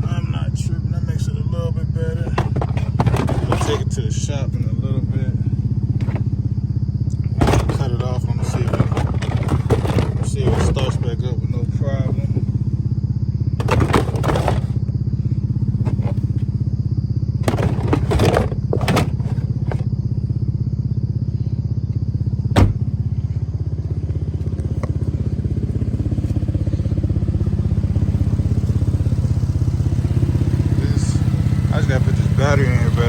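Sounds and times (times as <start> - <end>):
car engine idling: 0.0 - 33.0
short knocks and clatters: 2.2 - 3.9, 6.0 - 6.3, 7.4 - 11.0, 13.6 - 14.8, 17.4 - 19.8
sharp thump: 22.6 - 22.9.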